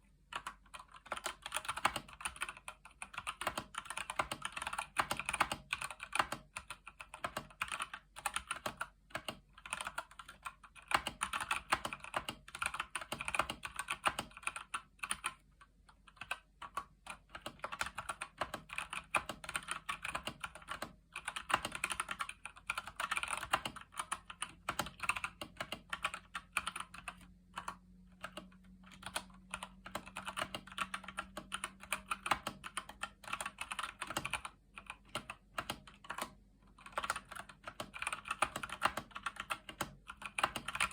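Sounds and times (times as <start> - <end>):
mechanical keyboard typing: 0.1 - 40.9.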